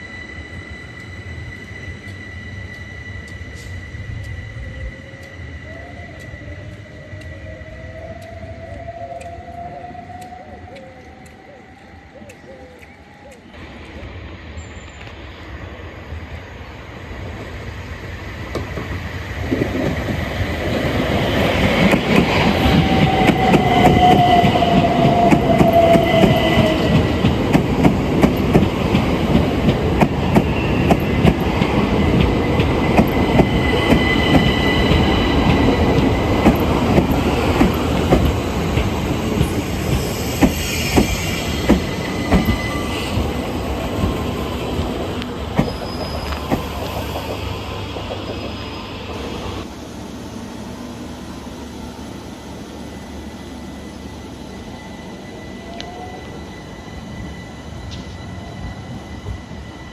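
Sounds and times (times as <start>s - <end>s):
electric train running through: 0.0s - 59.9s
wheels squealing on rails: 0.0s - 59.9s
wheels clicking over rail joints: 18.5s - 48.6s.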